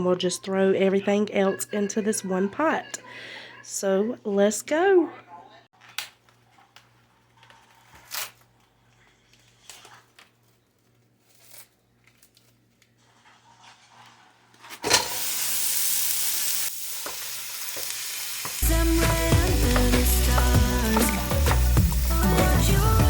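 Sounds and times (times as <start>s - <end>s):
meat sizzling in a pot: 14.8s - 23.0s.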